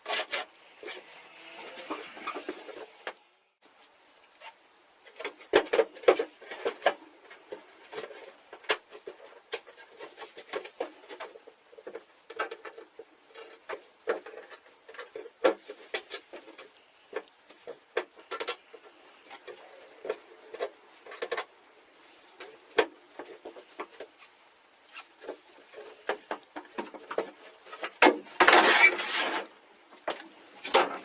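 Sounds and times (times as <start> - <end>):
scraping and knocking on wood: 5.1 - 31.0.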